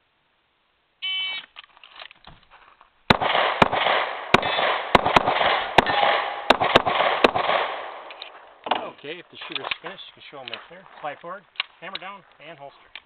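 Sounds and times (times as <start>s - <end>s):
pistol shots echoing: 3.1s - 8.4s.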